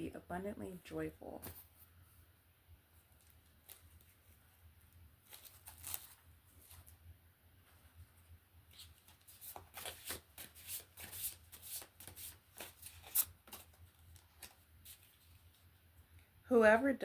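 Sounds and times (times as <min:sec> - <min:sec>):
cards being shuffled by hand: 0:05.2 - 0:07.0, 0:08.7 - 0:15.7.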